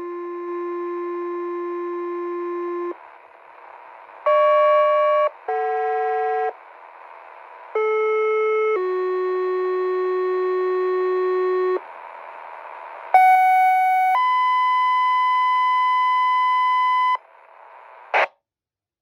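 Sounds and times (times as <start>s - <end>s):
radio hiss: 2.9s - 4.4s, 6.5s - 7.8s, 11.8s - 14.1s, 16.8s - 18.3s
burst of radio static: 17.3s - 18.3s.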